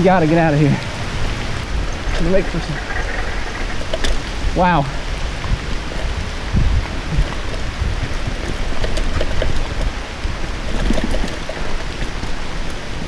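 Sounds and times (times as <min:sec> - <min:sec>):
heavy rain hissing: 0:00.0 - 0:08.0.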